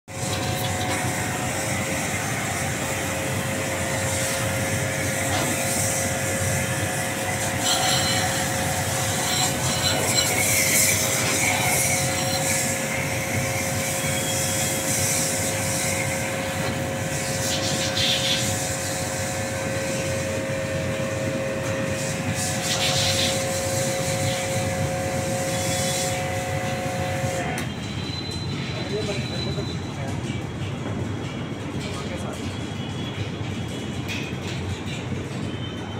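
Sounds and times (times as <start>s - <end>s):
machine humming: 0.1s - 28.0s
scraping noises: 7.3s - 12.8s.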